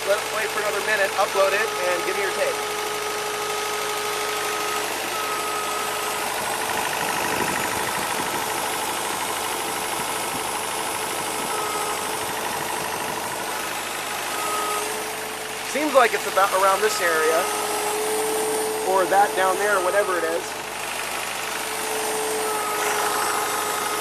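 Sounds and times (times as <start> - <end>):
truck engine idling: 0.0 - 24.0
thin whine: 7.0 - 24.0.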